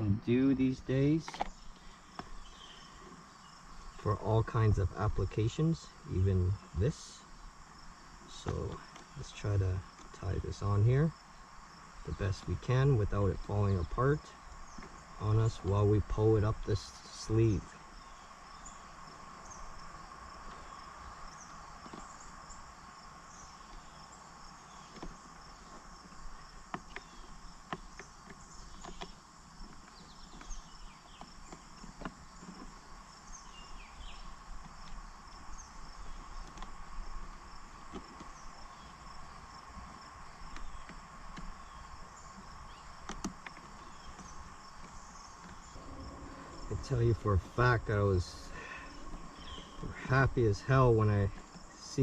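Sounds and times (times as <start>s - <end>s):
insect chirring: 0.0s - 52.0s
light clicks and knocks: 39.7s - 46.5s.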